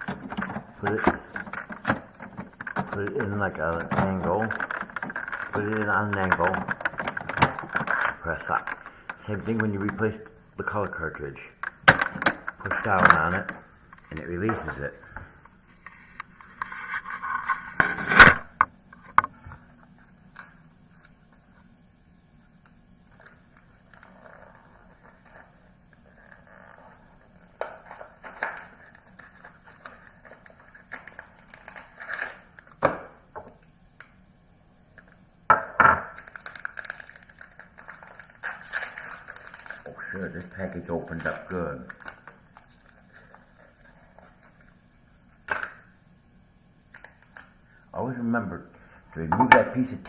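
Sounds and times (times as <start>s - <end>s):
plastic rustling: 0.0s - 21.7s, 22.4s - 34.2s, 36.1s - 46.0s, 46.9s - 48.0s
plastic packaging being scraped open: 36.2s - 44.6s.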